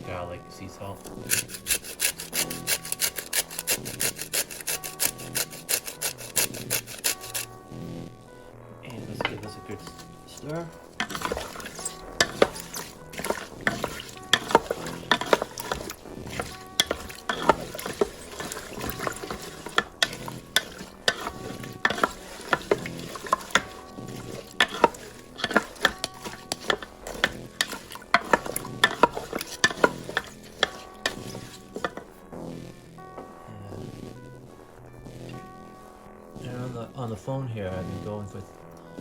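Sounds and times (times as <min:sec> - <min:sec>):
utensil scraping vegetables in pot: 0:00.9 - 0:07.6, 0:08.9 - 0:32.2.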